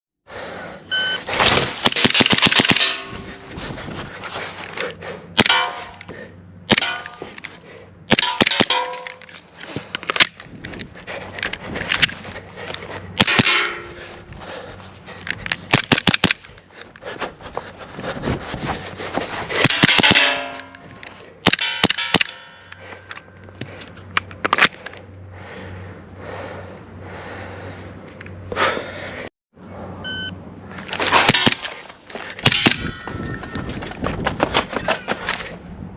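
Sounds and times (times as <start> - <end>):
metallic clanks and ringing: 8.2 - 9.3, 13.2 - 14.1, 19.7 - 21.0, 21.6 - 22.8, 32.5 - 33.7.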